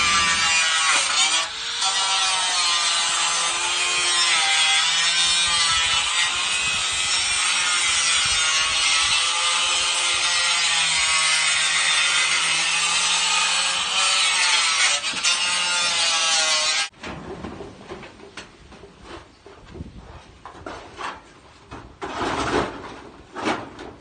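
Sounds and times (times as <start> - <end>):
power saw cutting: 0.0 - 16.9.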